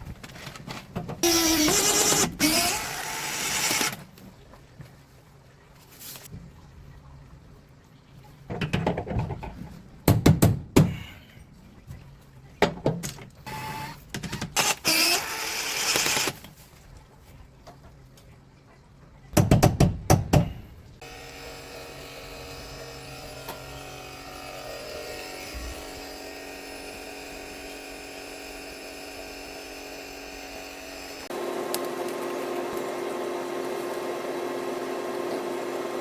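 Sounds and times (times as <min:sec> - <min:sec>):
knocks and clatter of work: 0:08.4 - 0:11.1, 0:12.6 - 0:13.4, 0:19.3 - 0:20.7.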